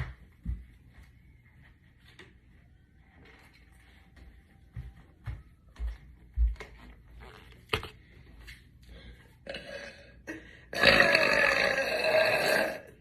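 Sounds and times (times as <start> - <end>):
woman burping: 9.4 - 13.0.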